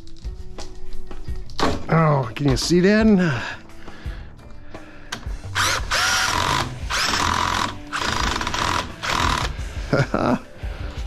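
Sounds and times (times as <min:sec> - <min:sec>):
power drill whirring: 0:05.5 - 0:09.6
screw squealing: 0:05.6 - 0:09.5.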